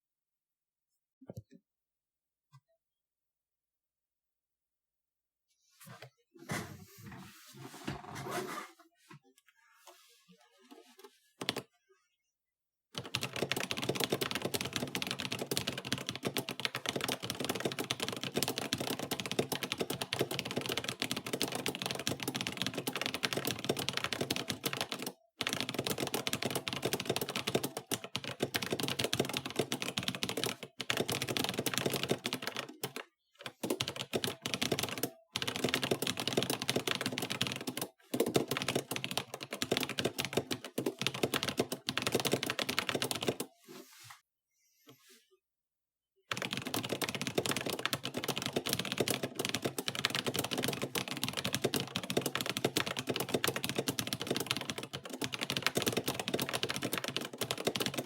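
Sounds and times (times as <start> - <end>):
mechanical keyboard typing: 13.0 - 43.5, 46.3 - 58.0.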